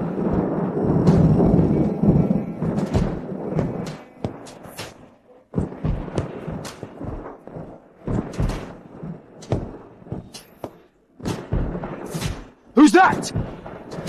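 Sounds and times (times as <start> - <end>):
dull thuds: 5.6 - 12.6.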